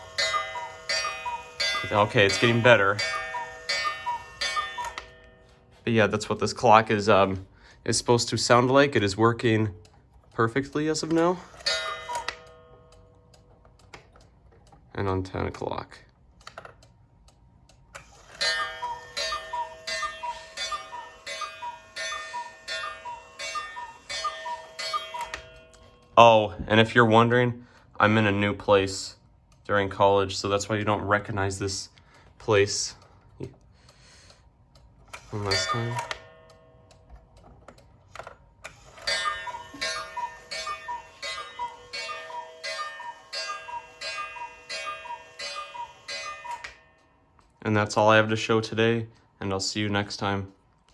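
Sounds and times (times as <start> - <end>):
striking mechanism clicks: 0.0 - 5.5, 9.0 - 26.2, 32.5 - 48.4
cuckoo clock call: 0.0 - 5.8, 10.7 - 13.5, 18.0 - 26.4, 35.1 - 37.1, 38.6 - 47.3.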